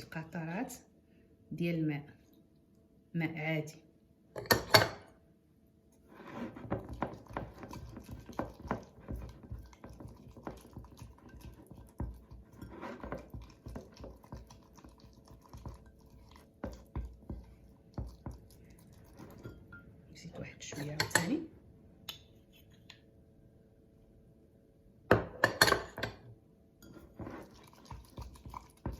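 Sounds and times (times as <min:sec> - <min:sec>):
wet squelches of stirred paste: 0:06.0 - 0:21.3, 0:26.8 - 0:28.9.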